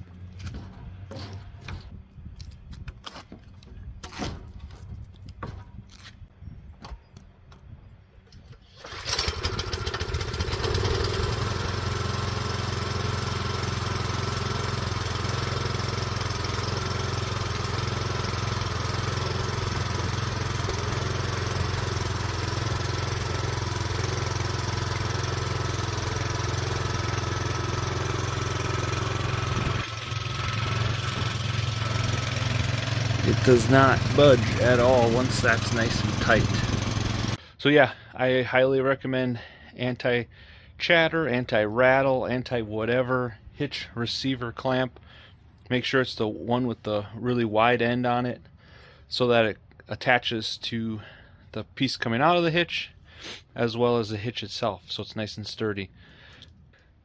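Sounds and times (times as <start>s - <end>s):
engine starting and idling: 8.6s - 37.5s.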